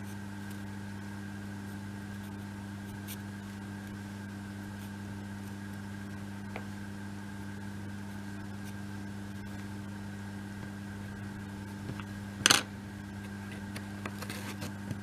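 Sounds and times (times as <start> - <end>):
electrical hum: 0.0 - 15.0.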